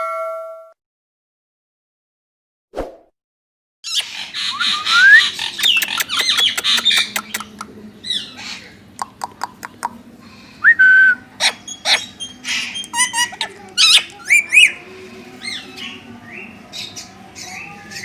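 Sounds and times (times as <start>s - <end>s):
parakeets squawking and whistling: 3.9s - 8.8s, 11.3s - 18.0s
quick sharp bird clicks: 5.6s - 7.7s.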